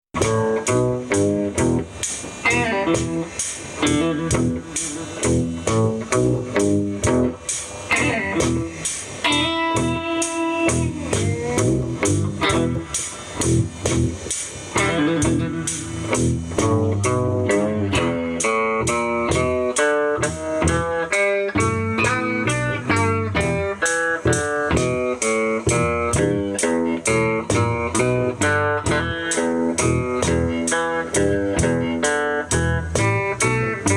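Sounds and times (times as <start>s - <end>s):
blues band playing: 0.2s - 33.9s
electric guitar blues phrases: 0.2s - 33.9s.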